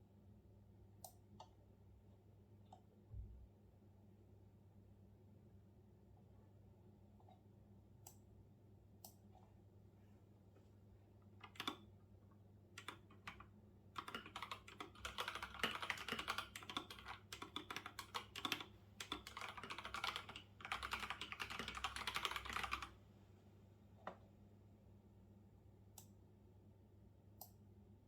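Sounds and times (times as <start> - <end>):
typing on computer keyboard: 11.4 - 11.8, 12.8 - 23.0.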